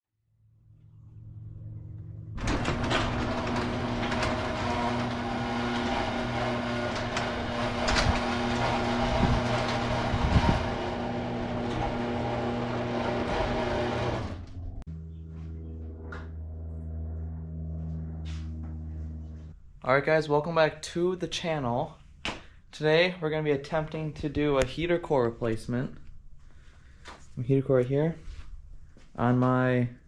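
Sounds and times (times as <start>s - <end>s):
car engine running: 11.5s - 19.5s.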